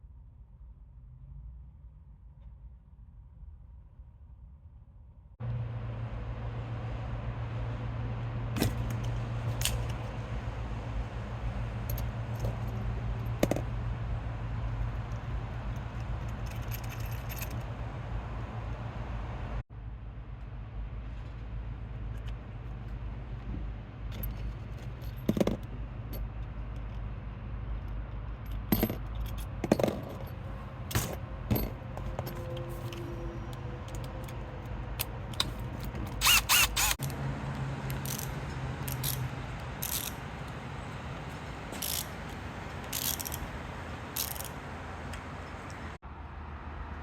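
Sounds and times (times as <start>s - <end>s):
low hum: 5.4s - 22.3s
metallic clicks and clinks: 11.8s - 14.0s, 14.6s - 17.8s, 37.9s - 40.2s, 41.7s - 42.2s, 42.8s - 43.4s, 44.2s - 44.6s.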